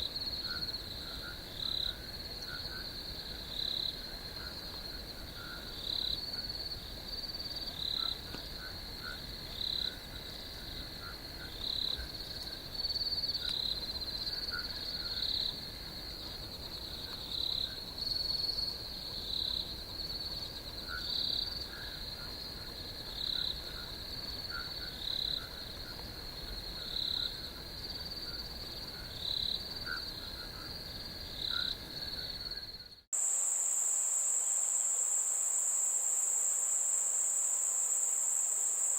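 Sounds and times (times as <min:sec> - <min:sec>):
insects and frogs trilling: 0:00.0 - 0:38.9
high cricket trill: 0:28.2 - 0:38.9.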